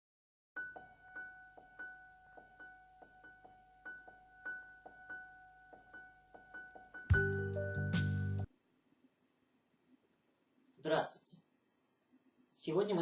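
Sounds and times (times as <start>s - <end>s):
soft piano music: 0.6s - 8.5s.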